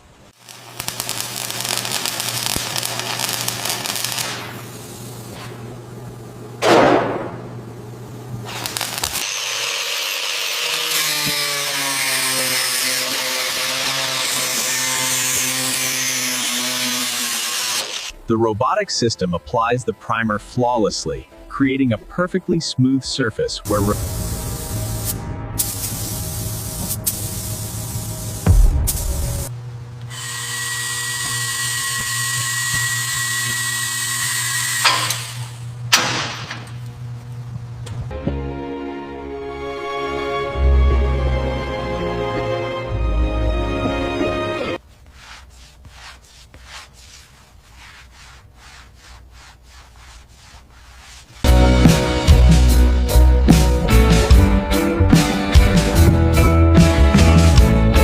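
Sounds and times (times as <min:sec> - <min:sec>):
power tool grinding metal: 0:08.6 - 0:18.2, 0:30.1 - 0:35.6.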